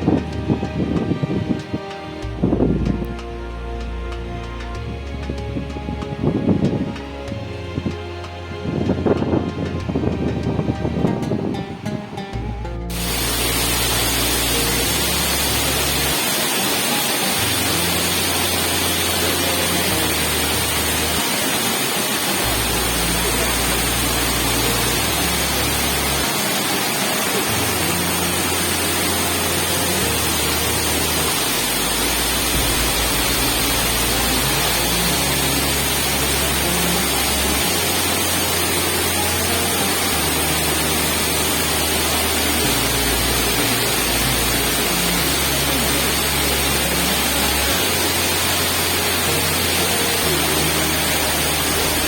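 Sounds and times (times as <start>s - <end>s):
waterfall rushing: 12.9s - 52.0s.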